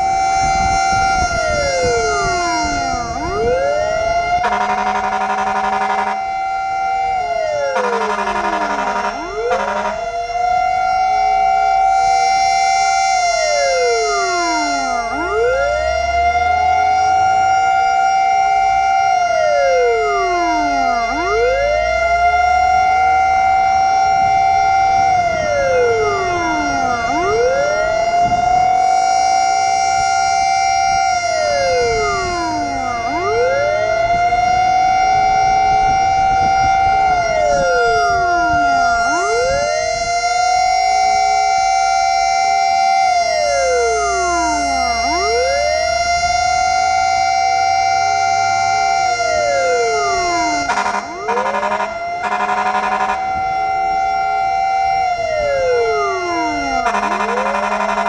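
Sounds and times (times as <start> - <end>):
steady high tone: 0.0 - 16.8, 19.2 - 21.9, 40.9 - 58.0
fire truck siren wailing: 0.0 - 58.0.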